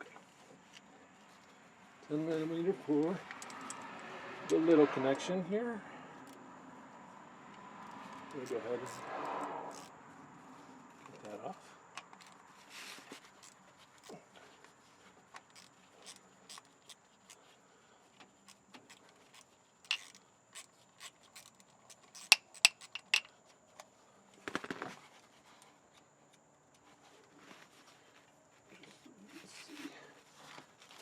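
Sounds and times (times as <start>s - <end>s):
metal clicks of hand tool: 3.3s - 4.0s, 18.4s - 23.3s
brief rustle: 10.6s - 17.6s.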